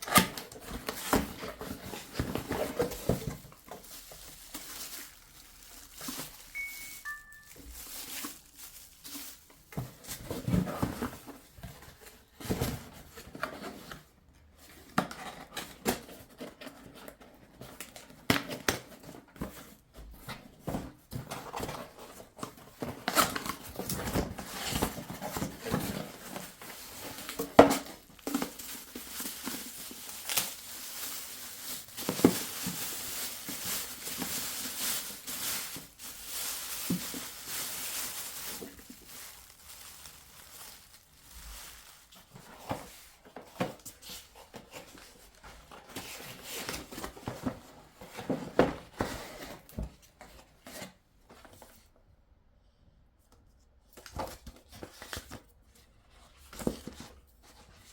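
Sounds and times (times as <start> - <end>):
objects being handled: 19.0 - 49.6.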